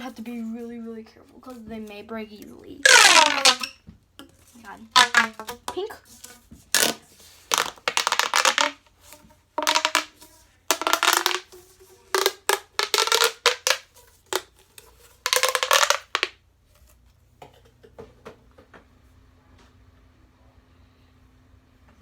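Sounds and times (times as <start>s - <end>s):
pop tube crackling clicks: 2.8s - 3.7s, 5.0s - 5.6s, 6.7s - 8.8s, 9.6s - 10.1s, 10.7s - 11.5s, 12.1s - 14.5s, 15.2s - 16.3s.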